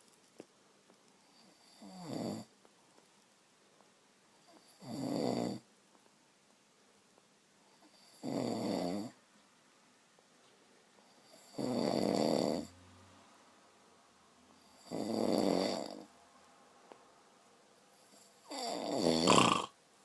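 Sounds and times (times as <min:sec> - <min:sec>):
person snoring: 0:01.4 - 0:02.5, 0:07.9 - 0:09.2, 0:11.3 - 0:12.7, 0:14.7 - 0:16.1, 0:18.1 - 0:19.8.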